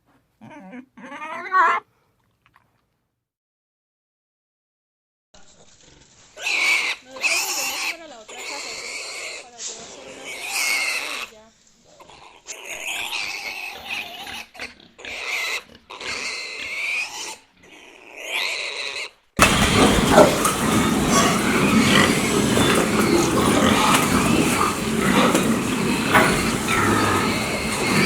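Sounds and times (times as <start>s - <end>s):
pig squealing: 12.1s - 28.0s
loud continuous noise: 19.4s - 28.0s.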